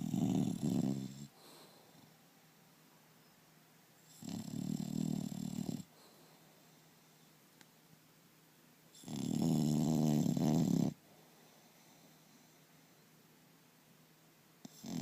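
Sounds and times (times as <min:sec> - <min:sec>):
dog snoring loudly: 0:00.0 - 0:02.0, 0:04.1 - 0:05.9, 0:09.0 - 0:11.0, 0:14.6 - 0:15.0.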